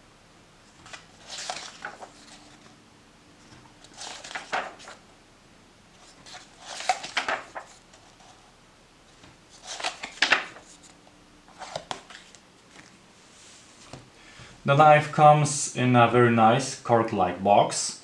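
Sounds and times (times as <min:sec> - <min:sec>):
packaging rustling: 0:00.7 - 0:02.8, 0:03.4 - 0:05.0, 0:06.0 - 0:08.4, 0:09.5 - 0:13.0.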